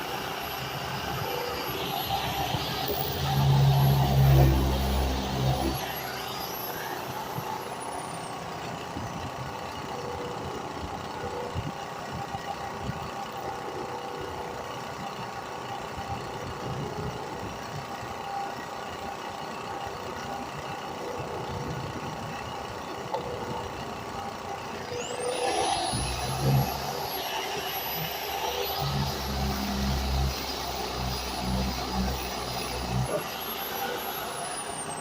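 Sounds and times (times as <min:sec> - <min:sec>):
steady mechanical hum: 0:00.0 - 0:35.0
power sander spinning down: 0:25.1 - 0:35.0.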